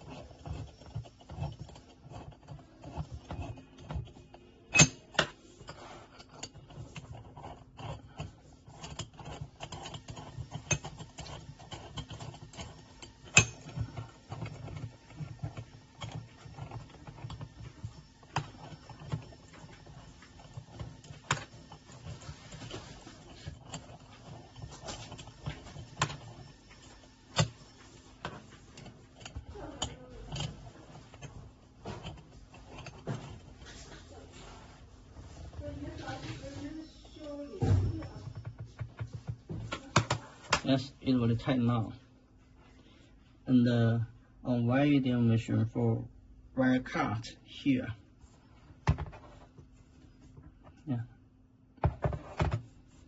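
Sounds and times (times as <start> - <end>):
faint steady hum: 0.0 - 53.0
metal tools clicking and rattling: 4.7 - 27.6.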